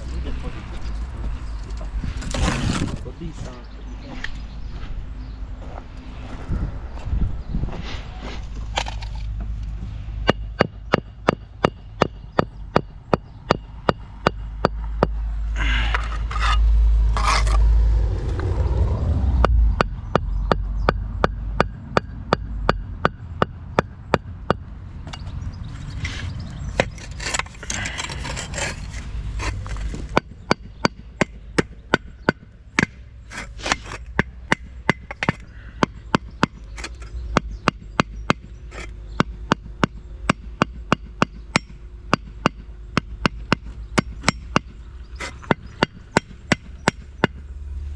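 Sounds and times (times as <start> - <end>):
scraping: 0.8 - 3.2, 15.6 - 17.7, 25.1 - 30.6, 32.8 - 35.5, 36.1 - 37.2, 38.6 - 39.0, 45.1 - 46.0
low rumble: 12.5 - 30.5.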